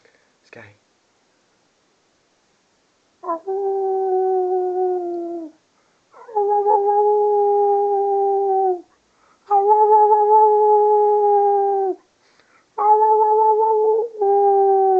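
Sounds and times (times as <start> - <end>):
dog howling: 3.2 - 5.5, 6.2 - 8.8, 9.5 - 12.0, 12.8 - 14.9.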